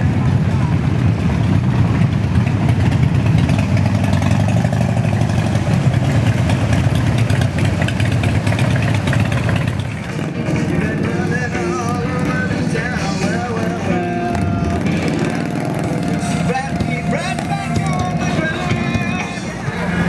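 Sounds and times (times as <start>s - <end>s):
vehicle engines droning and revving: 0.0s - 20.0s.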